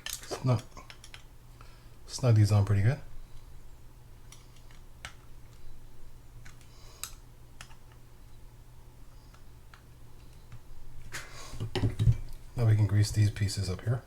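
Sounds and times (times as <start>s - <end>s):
faint low hum: 0.0s - 14.0s
screwdriver clicking on metal parts: 0.9s - 1.3s.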